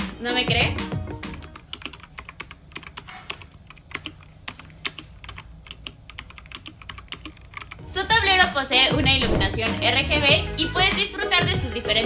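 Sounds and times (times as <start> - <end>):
typing on mechanical keyboard: 1.3 - 7.8.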